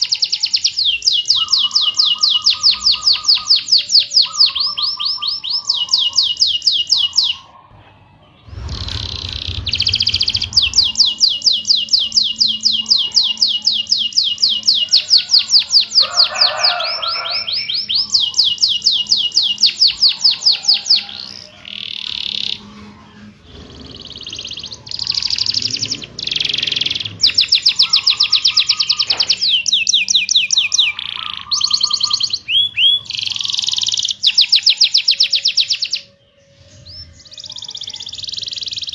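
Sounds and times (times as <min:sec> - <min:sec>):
canary singing trills: 0:00.0 - 0:38.9
low rumble: 0:07.8 - 0:14.6.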